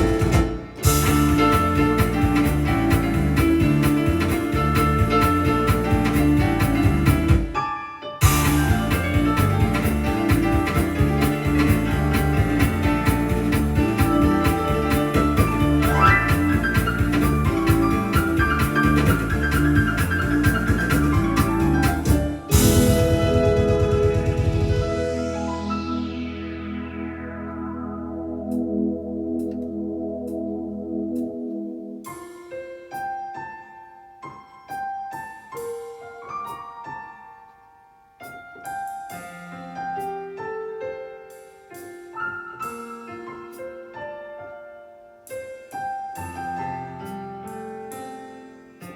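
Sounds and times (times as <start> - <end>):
cymbal crash: 0.0 - 2.0, 22.2 - 28.8
rapid bass pulse: 0.0 - 7.3, 8.2 - 31.2
drum rhythm: 0.0 - 7.6, 8.2 - 25.8
electronic organ piano notes: 0.0 - 38.0.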